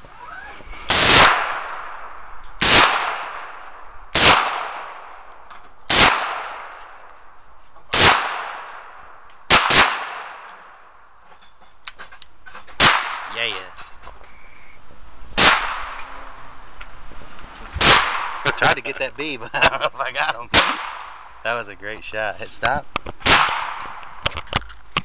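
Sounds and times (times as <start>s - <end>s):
revolver shots echoing: 0.9s - 5.3s, 5.9s - 7.1s, 7.9s - 10.8s, 20.5s - 21.3s, 23.2s - 24.2s.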